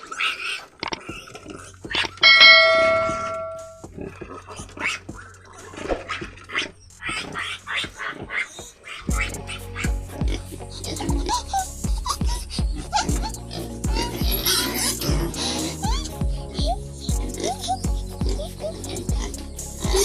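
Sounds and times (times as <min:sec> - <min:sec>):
piglets squealing and grunting: 0:00.0 - 0:02.2, 0:04.0 - 0:20.0
bell-like chime: 0:02.2 - 0:03.9
low steady hum: 0:02.2 - 0:03.9.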